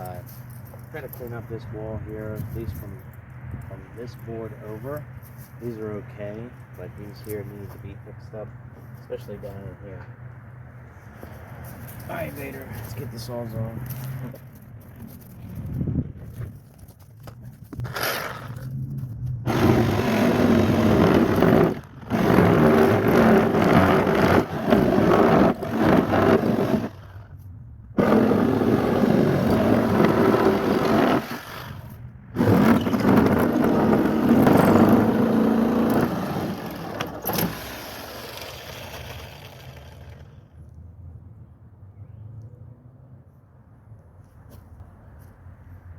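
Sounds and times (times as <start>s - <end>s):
power saw cutting wood boards: 19.5s - 27.2s, 28.0s - 40.4s.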